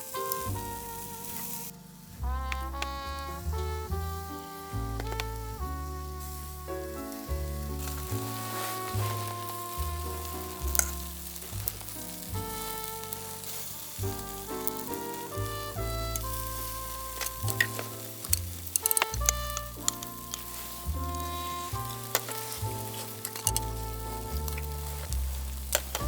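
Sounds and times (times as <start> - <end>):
food sizzling: 0.0 - 1.8, 4.4 - 26.0
instrumental background music: 0.0 - 26.0
sharp pops: 7.9 - 26.0.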